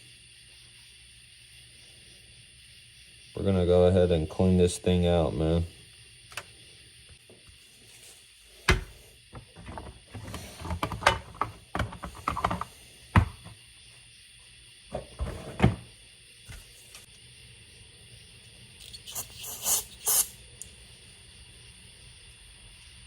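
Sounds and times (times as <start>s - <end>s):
small parts and tools handled: 18.8s - 20.3s.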